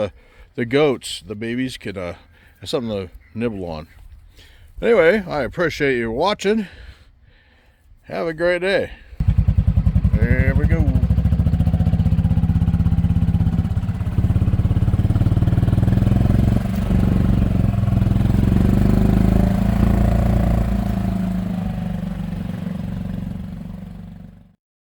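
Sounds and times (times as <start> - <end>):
golf cart engine droning: 9.2 - 24.5.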